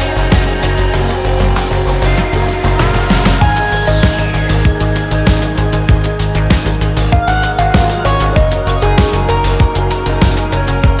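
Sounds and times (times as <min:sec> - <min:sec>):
electronic music with thumping beat: 0:00.0 - 0:11.0.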